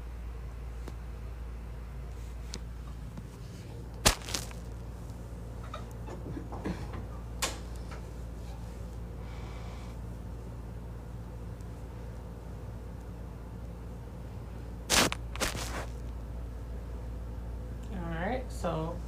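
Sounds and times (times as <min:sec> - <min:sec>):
steady low hum: 0:00.0 - 0:19.0
soft rustle: 0:14.9 - 0:16.0.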